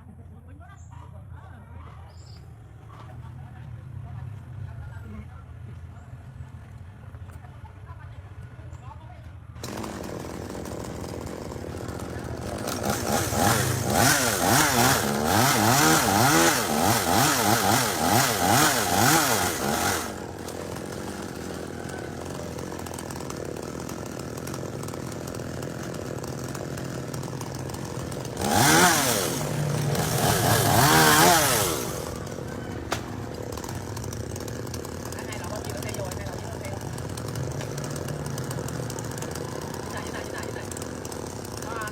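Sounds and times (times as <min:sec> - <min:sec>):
chainsaw engine revving and idling: 0:09.6 - 0:41.9.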